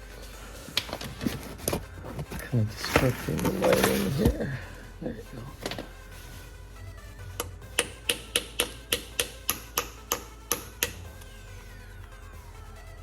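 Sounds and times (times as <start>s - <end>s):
hammer tapping steel punch: 7.4s - 11.2s.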